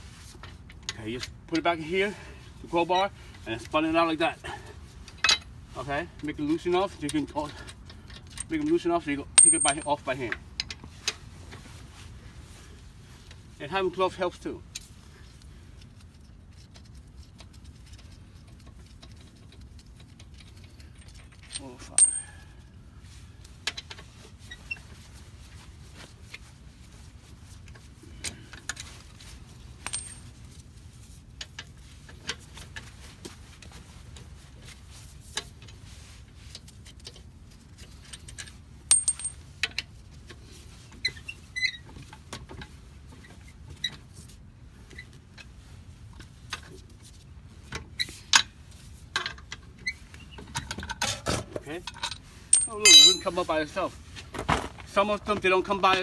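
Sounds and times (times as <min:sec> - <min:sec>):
metallic clinks of lug bolts: 0:09.4 - 0:10.7, 0:20.4 - 0:22.6, 0:29.8 - 0:30.3, 0:38.0 - 0:39.8, 0:51.9 - 0:53.3.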